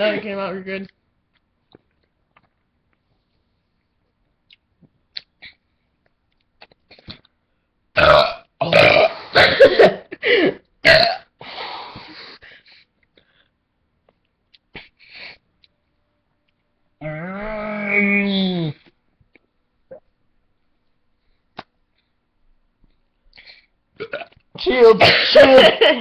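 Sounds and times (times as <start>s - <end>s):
man burping: 8.0s - 11.3s, 24.0s - 24.4s.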